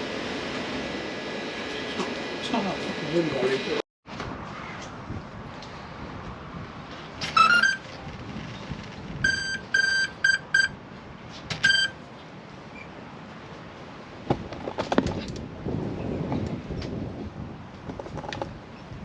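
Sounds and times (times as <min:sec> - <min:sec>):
short high electronic beeps: 0:07.4 - 0:07.8, 0:09.2 - 0:10.8, 0:11.6 - 0:12.0
electronic rising chirp: 0:09.2 - 0:10.8.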